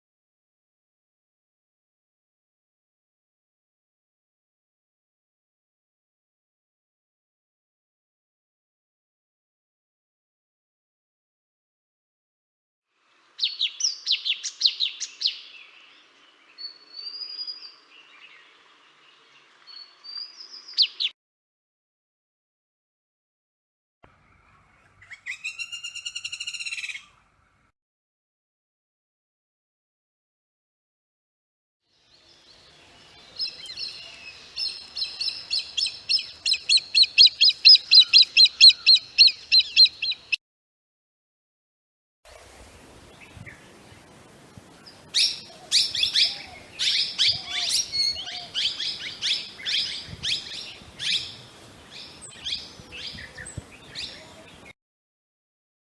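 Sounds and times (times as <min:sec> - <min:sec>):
bird singing sharp notes and whistles: 0:13.4 - 0:21.1, 0:24.4 - 0:27.2, 0:32.0 - 0:40.4, 0:44.8 - 0:54.7.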